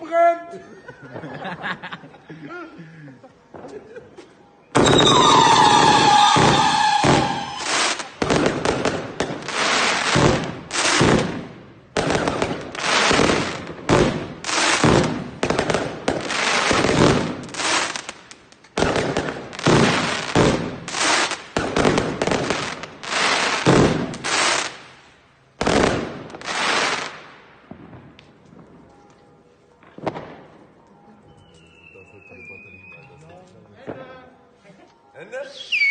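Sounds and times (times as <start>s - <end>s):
whistling firework: 4.7s - 11.3s, 31.2s - 33.3s, 35.5s - 35.9s
firework bangs and crackling: 4.7s - 29.0s, 29.8s - 30.8s.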